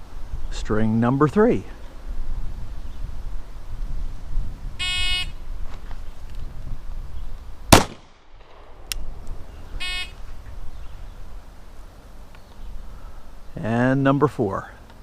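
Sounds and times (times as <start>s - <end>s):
pistol shot: 7.7s - 8.8s.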